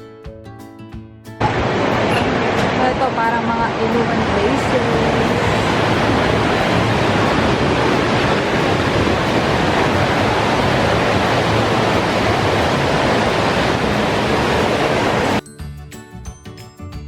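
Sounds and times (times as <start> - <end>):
waterfall: 1.4 - 15.4.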